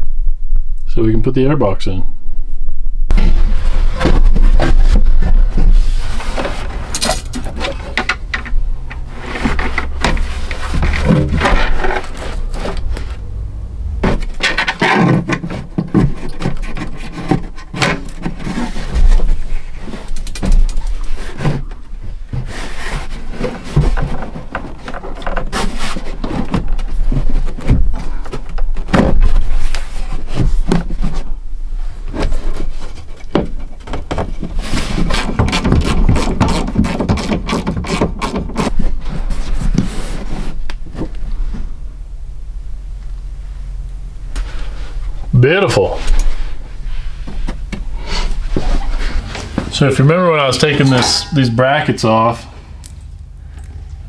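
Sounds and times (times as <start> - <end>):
steady low hum: 0.0 - 36.9, 38.2 - 54.0
parts scraping and clattering: 3.1 - 13.3, 13.9 - 31.4, 45.8 - 54.0.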